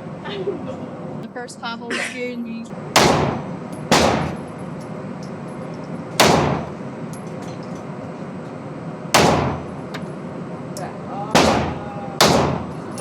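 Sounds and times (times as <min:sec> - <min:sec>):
gunshots with echo: 0:03.0 - 0:04.5, 0:06.2 - 0:06.8, 0:09.2 - 0:09.7, 0:11.4 - 0:12.7.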